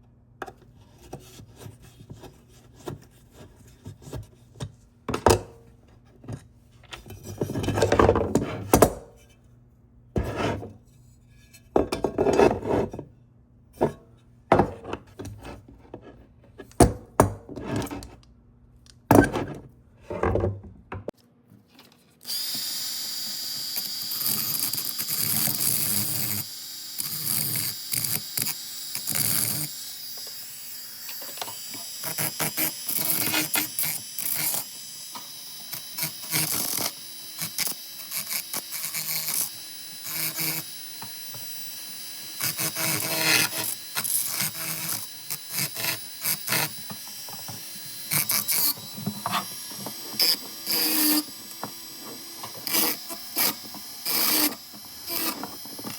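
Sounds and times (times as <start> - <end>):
power tool bursts: 22.2 - 55.9.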